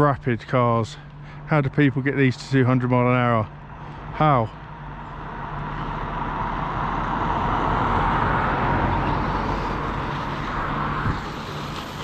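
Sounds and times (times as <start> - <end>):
steady low hum: 0.0 - 12.0
vehicle passing by: 1.0 - 12.0.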